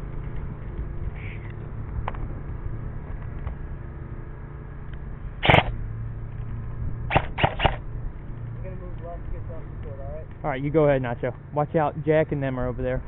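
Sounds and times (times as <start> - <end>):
low steady background rumble: 0.0 - 13.0
airsoft gun shots: 5.4 - 5.8, 7.1 - 7.8.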